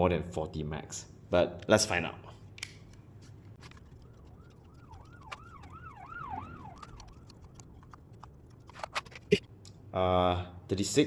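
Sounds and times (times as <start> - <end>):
faint siren wailing: 3.6 - 8.4.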